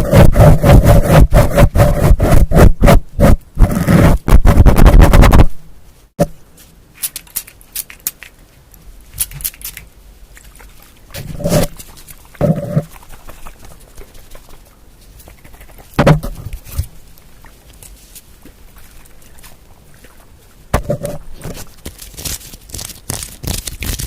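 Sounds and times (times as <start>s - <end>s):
scratching and tapping close to microphone: 0.0s - 5.6s, 11.1s - 16.9s, 20.7s - 24.0s
rustle: 5.8s - 24.0s.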